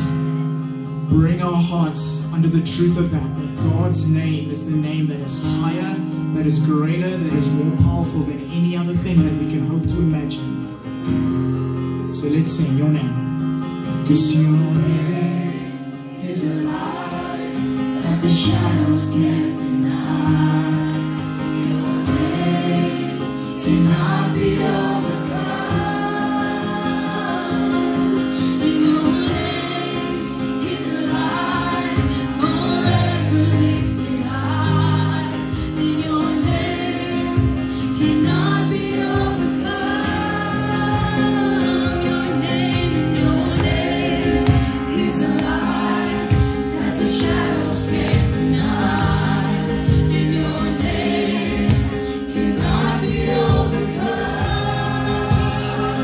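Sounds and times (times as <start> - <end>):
sustained instrumental chords: 2.3 - 56.0
group singing worship song: 14.5 - 56.0.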